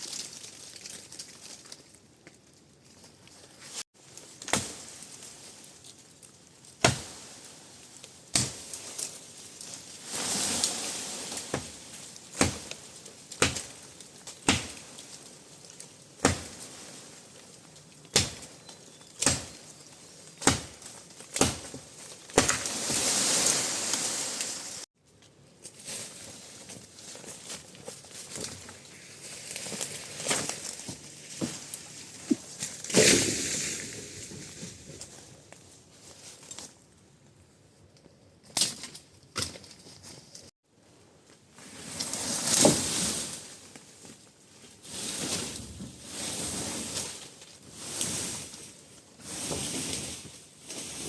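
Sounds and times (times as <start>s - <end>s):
rustling noise: 8.7s - 12.3s, 19.7s - 36.9s, 41.4s - 51.0s.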